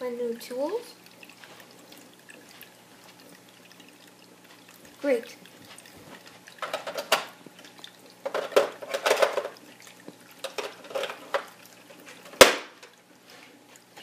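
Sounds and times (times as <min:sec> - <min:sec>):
plastic attachments clattering: 0:08.2 - 0:09.6.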